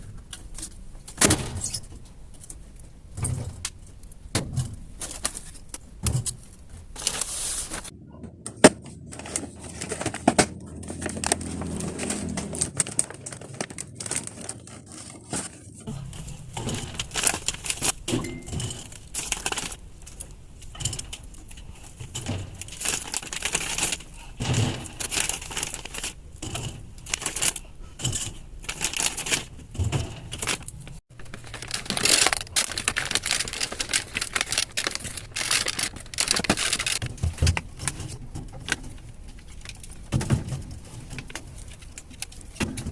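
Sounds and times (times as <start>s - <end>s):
plastic packaging crinkling: 9.1s - 40.1s.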